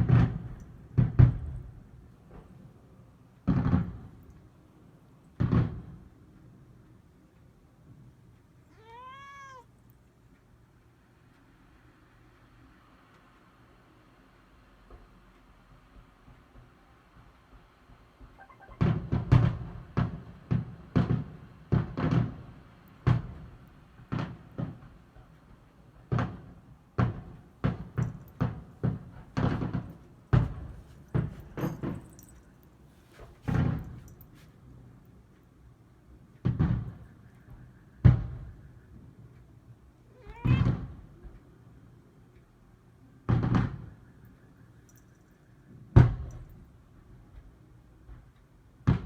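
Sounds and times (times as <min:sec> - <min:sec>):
fireworks booming: 0:00.0 - 0:02.6, 0:03.4 - 0:04.3, 0:05.4 - 0:06.1, 0:18.4 - 0:24.9, 0:26.1 - 0:32.3, 0:36.4 - 0:38.8, 0:43.3 - 0:44.2.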